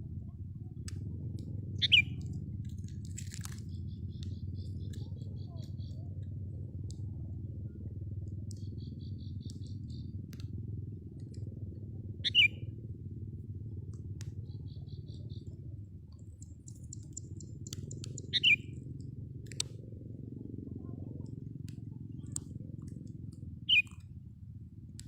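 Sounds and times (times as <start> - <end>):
bird calls: 1.7 - 2.3, 3.1 - 6.1, 8.5 - 10.1, 12.2 - 12.6, 16.4 - 18.9, 23.7 - 24.0
quick chattering bird notes: 1.8 - 2.3, 12.2 - 12.6, 16.6 - 18.8, 23.7 - 24.0.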